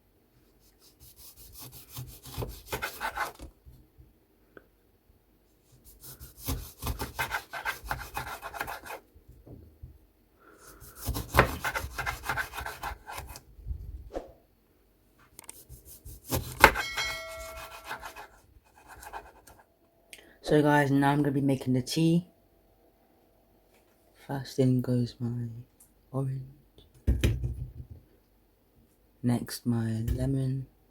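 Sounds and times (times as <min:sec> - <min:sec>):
knife slicing through lemon: 0:01.0 - 0:03.5, 0:05.8 - 0:09.0, 0:10.6 - 0:13.4, 0:15.5 - 0:19.5
short ringing clink: 0:16.8 - 0:17.8.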